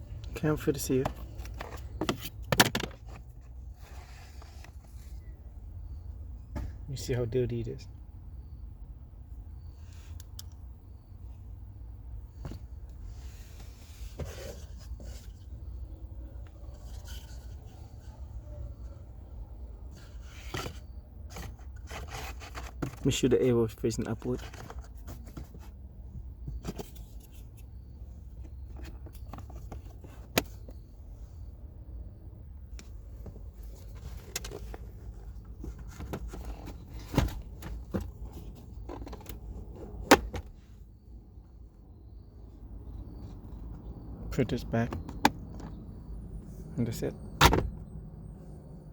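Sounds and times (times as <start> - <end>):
filter scraping against plastic: 33.2 - 40.4.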